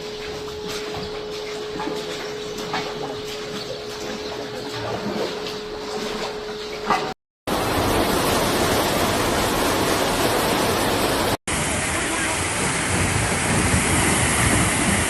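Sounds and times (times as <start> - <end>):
floodwater rushing: 7.5 - 15.0.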